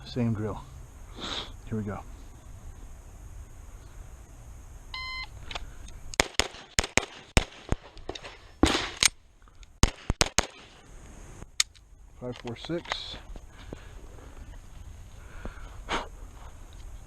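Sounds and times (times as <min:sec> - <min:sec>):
pistol firing rapid shots: 0:06.2 - 0:07.8, 0:09.8 - 0:10.7.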